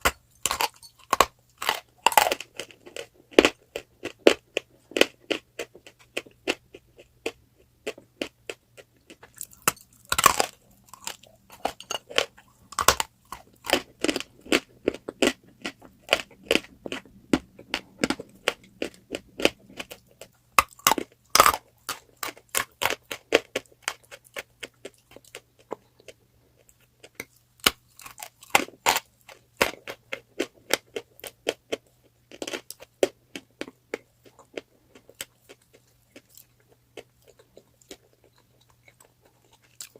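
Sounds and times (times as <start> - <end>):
chalk crunching when chewed: 0.0 - 39.9.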